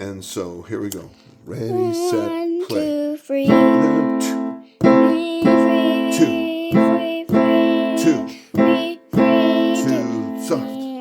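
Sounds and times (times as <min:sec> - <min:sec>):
piano chords: 0:03.4 - 0:11.0.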